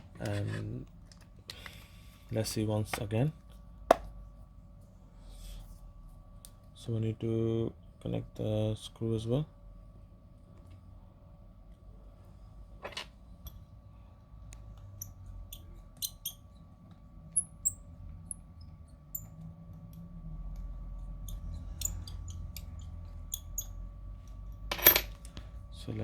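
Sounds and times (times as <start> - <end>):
faint steady whine: 0.0 - 26.0.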